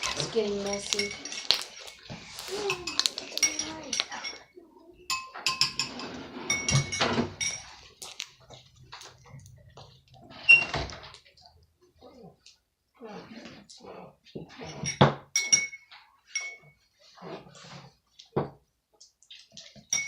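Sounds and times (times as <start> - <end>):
metal spoon clinking against bowl: 0.0 - 2.1, 2.7 - 4.5, 5.1 - 7.8, 14.8 - 16.8.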